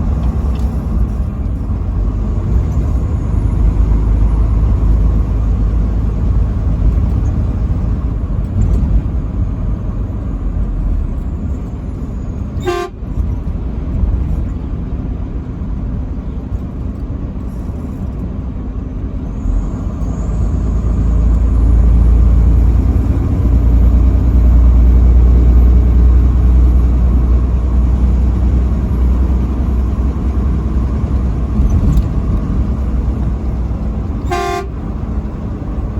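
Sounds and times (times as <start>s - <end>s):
vehicle driving rumble: 0.0s - 35.9s
short horn toots: 12.6s - 13.1s, 34.2s - 34.8s.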